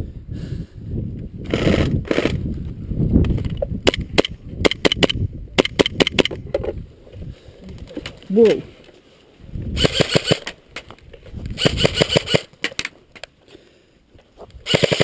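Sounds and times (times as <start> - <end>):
airsoft gun shots: 9.8 - 10.5, 14.7 - 15.0.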